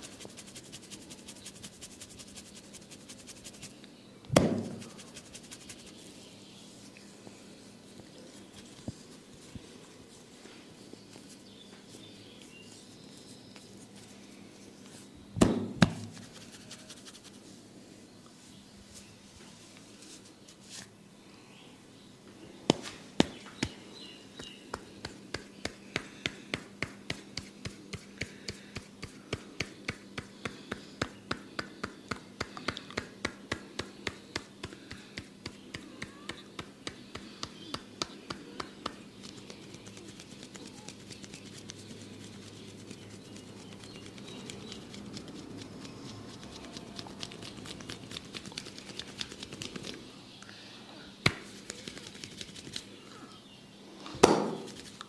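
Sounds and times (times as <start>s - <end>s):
hands slapping a head: 4.3s - 5.9s, 15.4s - 17.2s, 22.7s - 23.8s, 24.4s - 41.4s, 46.5s - 50.0s, 51.2s - 52.8s, 54.2s - 55.0s
hands tapping a head: 4.3s - 5.9s, 22.7s - 23.8s, 24.4s - 41.4s, 46.5s - 50.0s, 51.2s - 52.8s.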